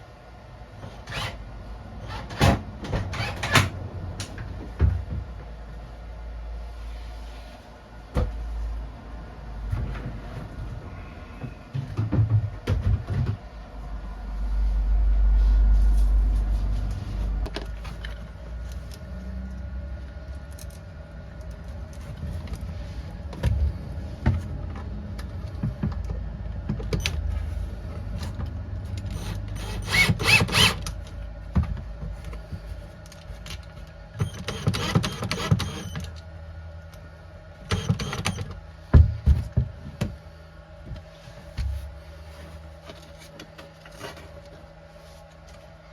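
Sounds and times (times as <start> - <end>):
low rumble: 8.3 - 29.3.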